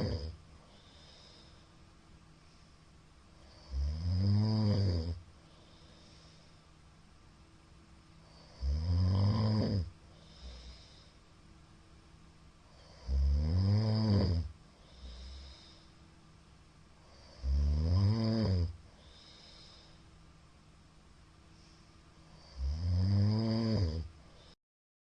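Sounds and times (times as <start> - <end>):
man snoring loudly: 0.0 - 0.4, 3.4 - 5.2, 8.3 - 10.9, 12.7 - 15.6, 17.1 - 19.6, 22.4 - 24.1
faint breath: 0.6 - 3.7, 5.3 - 7.1, 10.0 - 11.5, 14.6 - 16.3, 18.8 - 20.4, 21.4 - 22.6, 24.2 - 24.6.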